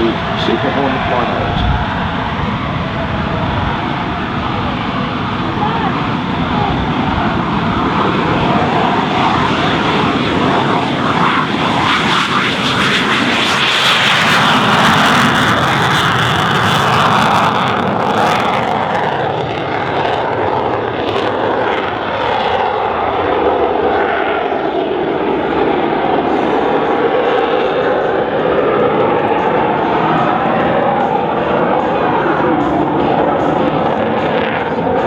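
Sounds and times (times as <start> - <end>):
jet flying past: 0.0 - 35.0.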